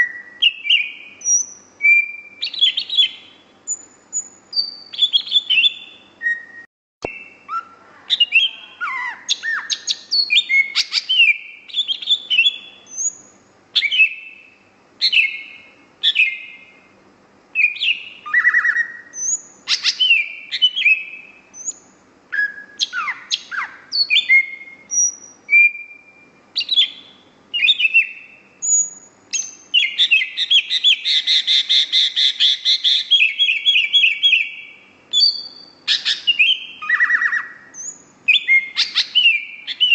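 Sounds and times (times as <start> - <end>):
bird singing whistled phrases: 0.0 - 16.8, 17.5 - 39.9
fast bird trill: 7.1 - 16.7, 17.6 - 21.8, 26.6 - 39.9.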